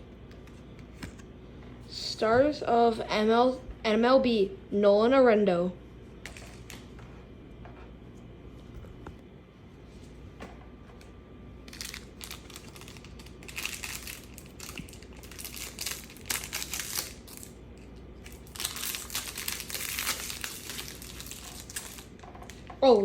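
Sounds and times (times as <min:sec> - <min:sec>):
plastic wrapper crinkling: 0:11.6 - 0:22.7.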